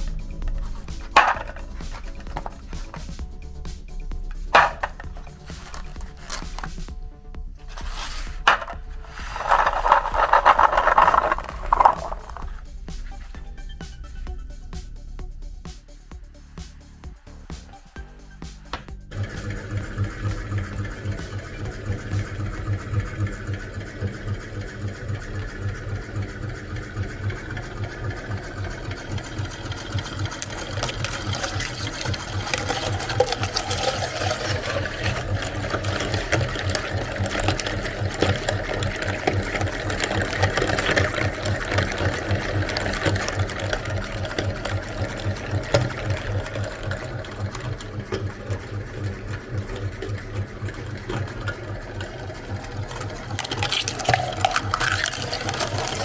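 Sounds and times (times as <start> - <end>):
wet crunching and crackling: 0.0 - 6.9, 7.7 - 12.6, 30.2 - 56.0
meat grinder pulsing hum: 7.8 - 12.7, 19.1 - 56.0.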